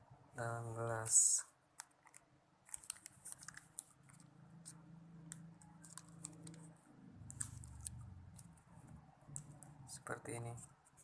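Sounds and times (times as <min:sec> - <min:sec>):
faint low hum: 0:00.0 - 0:11.0
plastic sachet crinkling: 0:01.8 - 0:04.8.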